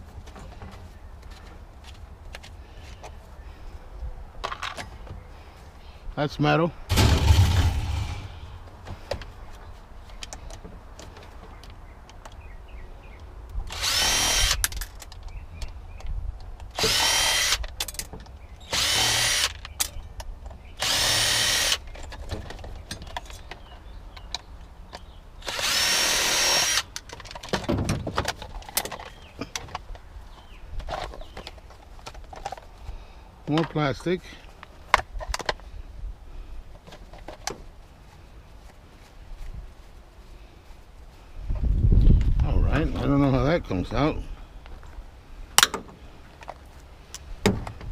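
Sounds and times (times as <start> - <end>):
electric drill motor whining: 13.7 - 14.6, 16.8 - 17.6, 18.7 - 19.6, 20.8 - 21.8, 25.4 - 26.9
handling of parts: 26.9 - 32.8.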